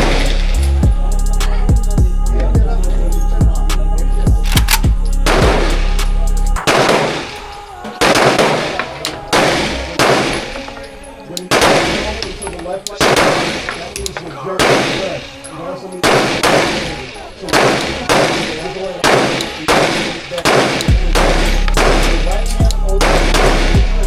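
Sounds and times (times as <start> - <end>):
gunshots ringing out: 0.0 - 0.6, 4.5 - 6.0, 6.6 - 22.4, 23.0 - 23.9
background music with beat: 0.0 - 15.2, 16.0 - 24.0.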